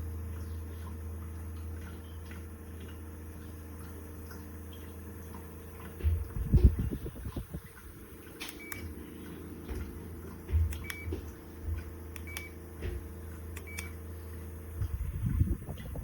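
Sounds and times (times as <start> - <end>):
fan motor hum: 0.0 - 16.0
short beeps with clicks: 8.6 - 8.9, 10.7 - 11.1, 12.2 - 12.6, 13.6 - 14.0.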